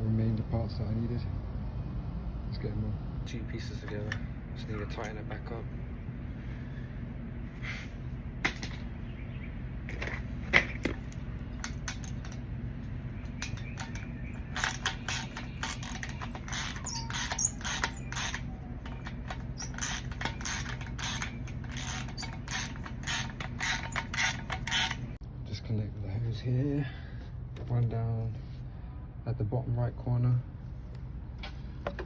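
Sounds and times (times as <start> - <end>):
ratchet wrench clicking: 13.4 - 25.1.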